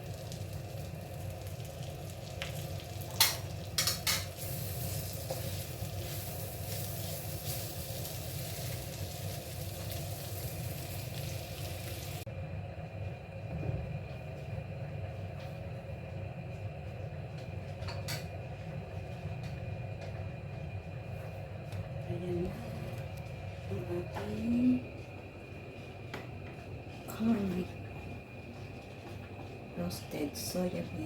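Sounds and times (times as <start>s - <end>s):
beans sizzling in oil: 0.0s - 12.3s
steady low hum: 0.0s - 31.0s.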